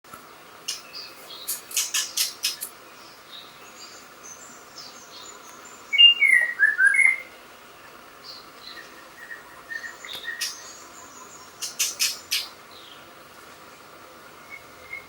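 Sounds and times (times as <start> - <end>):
bird whistling song: 5.9 - 7.3, 8.7 - 10.8, 14.4 - 15.0.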